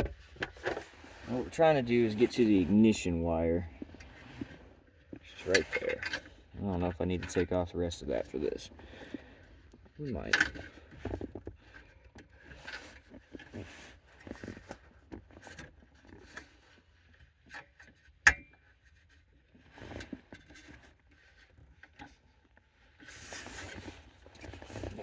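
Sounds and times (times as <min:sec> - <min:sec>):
scraping and rubbing on car trim: 0:00.1 - 0:02.9, 0:18.8 - 0:25.0.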